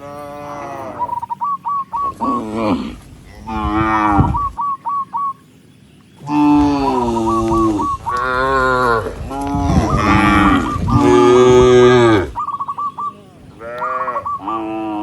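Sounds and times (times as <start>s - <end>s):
cattle mooing: 2.0s - 4.6s, 6.2s - 12.4s, 13.6s - 15.0s.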